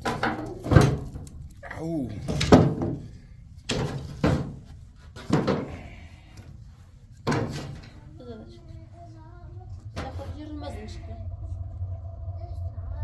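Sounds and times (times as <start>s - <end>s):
sharp knocks and thuds: 0.0s - 1.5s, 2.2s - 6.6s, 7.2s - 8.0s.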